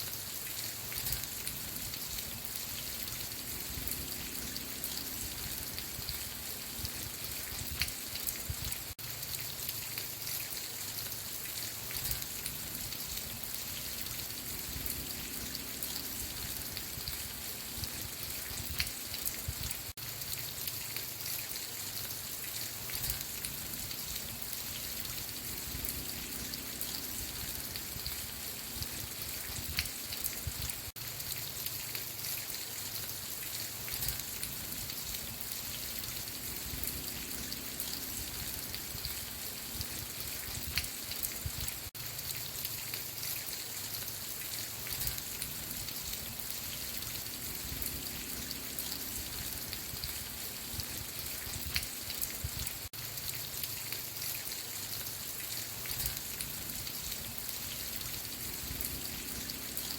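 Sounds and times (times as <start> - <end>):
rain hiss: 0.0 - 59.9
raindrop hits: 33.9 - 42.9, 55.8 - 59.9.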